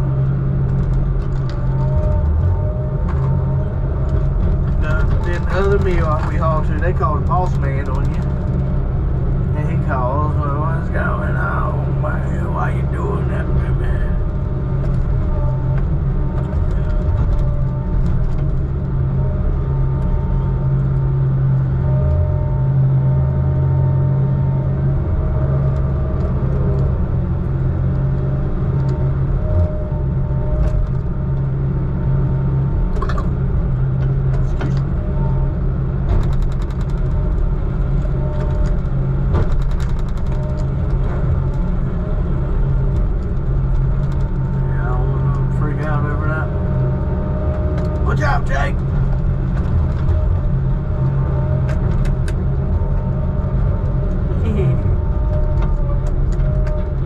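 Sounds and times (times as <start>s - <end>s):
heavy diesel engine running: 0.0s - 57.0s
clicks and rattles: 36.1s - 37.4s, 38.3s - 41.6s.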